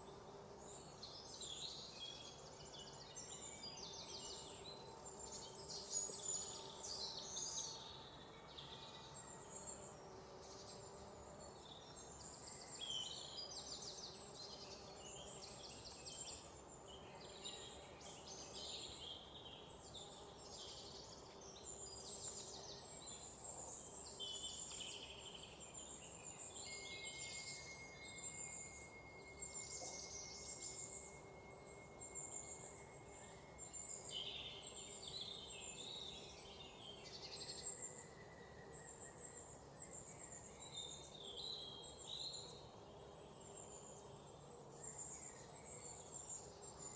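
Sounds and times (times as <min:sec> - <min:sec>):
faint steady hiss: 0:00.0 - 0:46.9.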